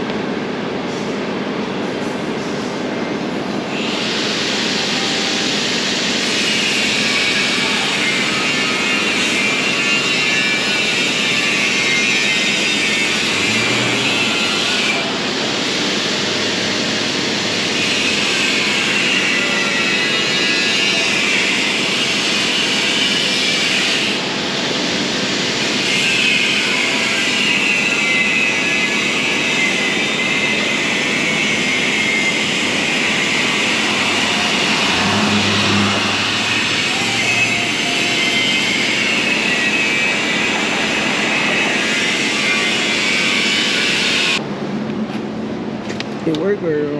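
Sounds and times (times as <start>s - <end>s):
loud rushing machine noise: 0.0s - 45.8s
machine rushing noise: 13.2s - 18.2s, 31.0s - 43.4s
low hum: 31.9s - 38.0s.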